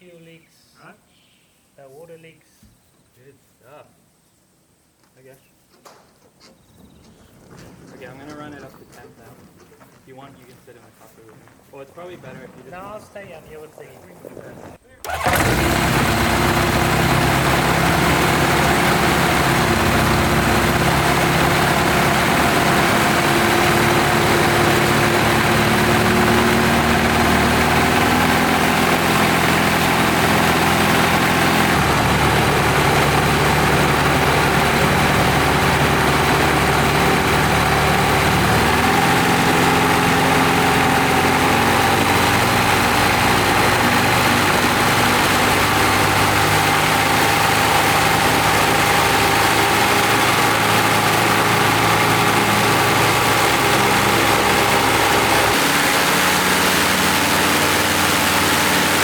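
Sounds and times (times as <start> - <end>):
aircraft piston engine running: 15.0 - 59.0.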